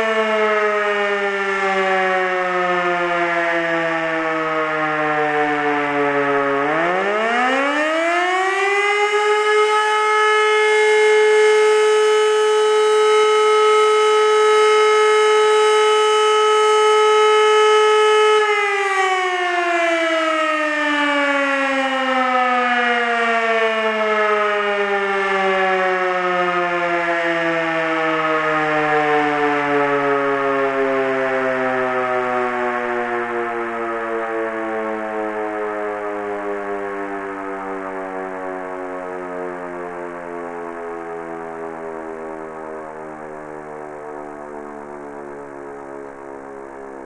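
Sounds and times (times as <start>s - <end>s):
motor siren wailing: 0.0s - 47.0s.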